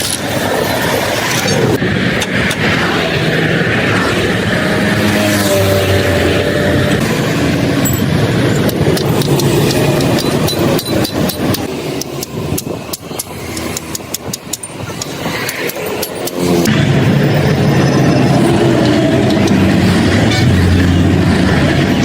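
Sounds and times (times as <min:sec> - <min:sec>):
engine running: 0:00.0 - 0:22.0
sharp clicks and taps: 0:08.6 - 0:16.5.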